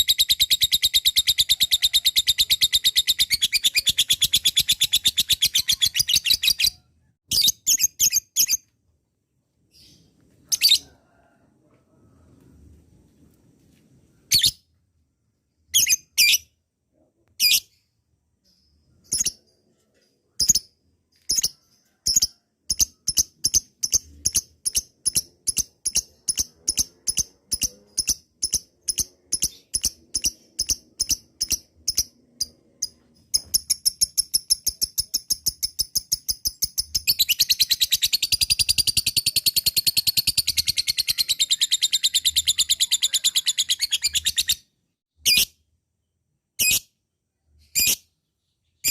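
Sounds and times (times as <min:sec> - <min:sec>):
lovebird chirping and chattering: 0:00.0 - 0:08.6, 0:17.4 - 0:44.6, 0:47.6 - 0:48.9.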